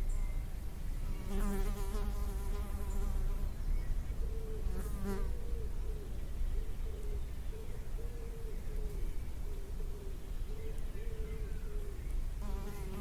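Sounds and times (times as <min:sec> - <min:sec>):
flying insect buzzing: 0:01.2 - 0:03.4.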